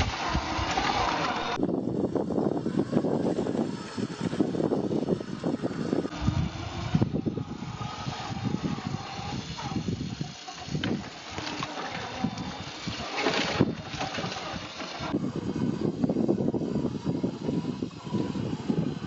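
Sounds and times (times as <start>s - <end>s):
toy car motor whining: 0.0s - 19.0s
tyres crackling on dirt and stones: 7.4s - 15.2s.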